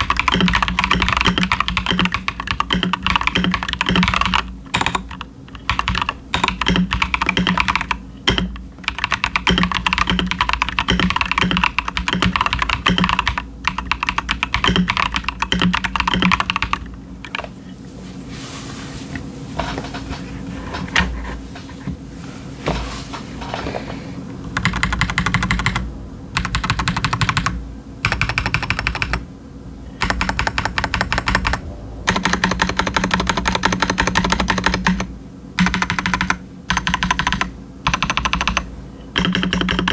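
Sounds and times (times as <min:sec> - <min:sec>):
fast typing on mechanical keyboard: 0:00.0 - 0:17.5, 0:24.5 - 0:29.3, 0:30.0 - 0:39.9.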